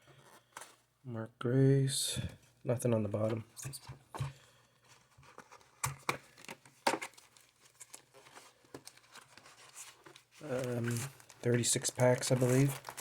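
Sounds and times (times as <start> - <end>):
cardboard crinkling and tearing: 5.0 - 13.0.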